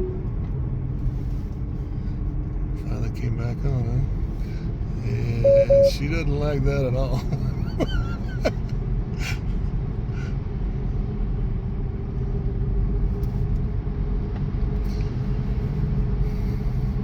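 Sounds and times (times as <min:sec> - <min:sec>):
faint steady hum: 0:05.4 - 0:06.1
road and tyre rumble: 0:06.4 - 0:17.0.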